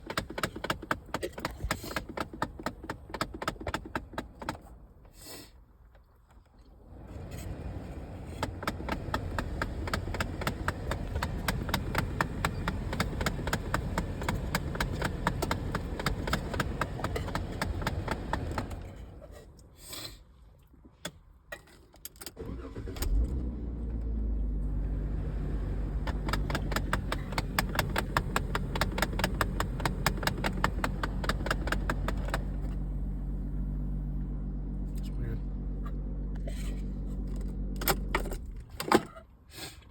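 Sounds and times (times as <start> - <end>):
van engine starting and idling: 0.0 - 19.5, 22.1 - 39.4
rapid engine ticking: 8.2 - 18.9, 25.7 - 32.8.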